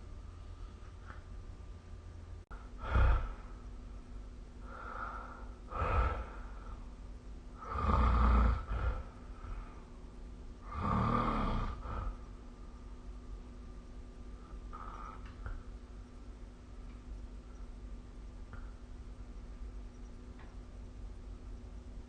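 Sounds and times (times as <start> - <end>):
person snoring: 2.6 - 3.6, 4.6 - 6.8, 7.6 - 9.8, 10.6 - 12.2.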